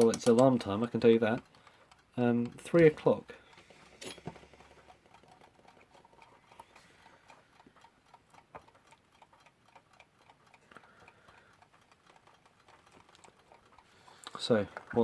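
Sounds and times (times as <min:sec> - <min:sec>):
sharp click: 0:00.0 - 0:00.6
alarm clock ticking: 0:00.0 - 0:15.0.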